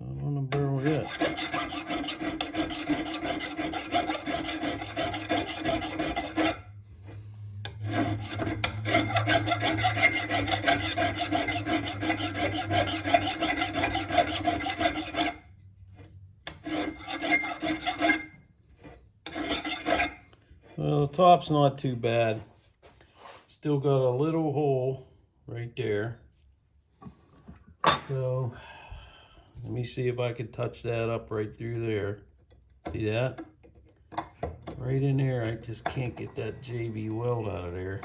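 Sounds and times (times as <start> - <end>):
hand file rasping on metal: 0.5 - 21.1.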